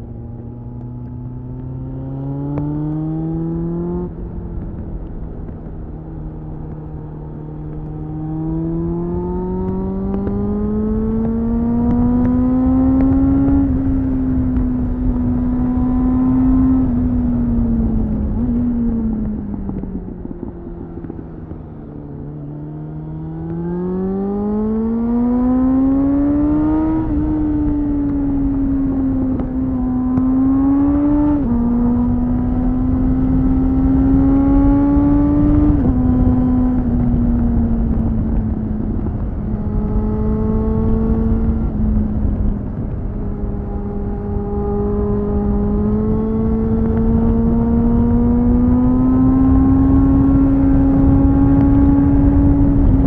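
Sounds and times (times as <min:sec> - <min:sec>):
motorcycle engine accelerating: 0:00.0 - 0:53.0
wind noise on microphone: 0:24.0 - 0:53.0.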